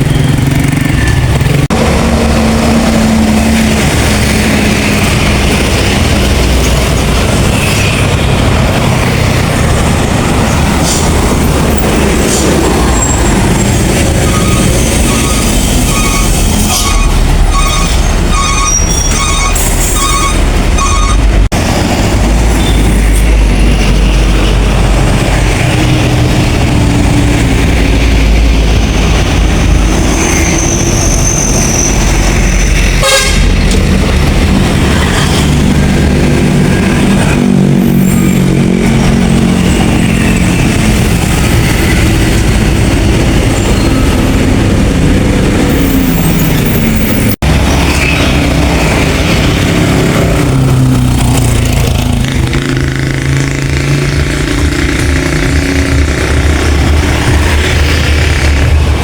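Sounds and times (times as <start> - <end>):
bus engine running: 0.0 - 59.0
multi-tone air horn tune: 33.0 - 33.6.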